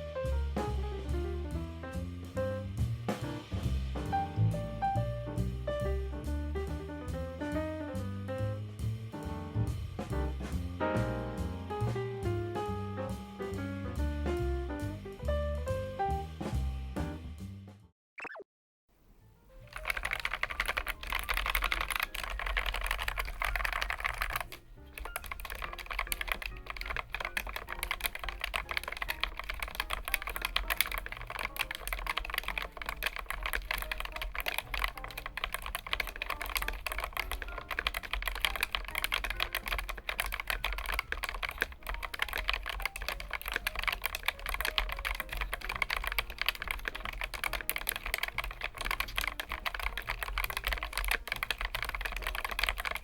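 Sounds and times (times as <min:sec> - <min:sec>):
fast typing on mechanical keyboard: 0:19.6 - 0:53.0.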